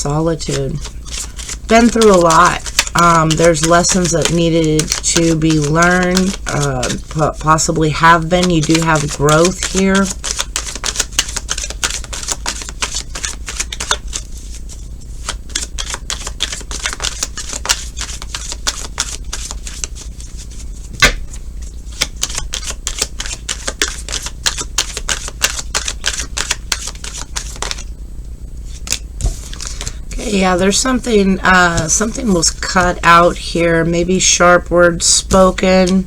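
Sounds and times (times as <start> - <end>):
cards being shuffled: 0.3 - 27.9, 28.6 - 30.0, 30.7 - 33.3
sharp knock: 21.0 - 21.2.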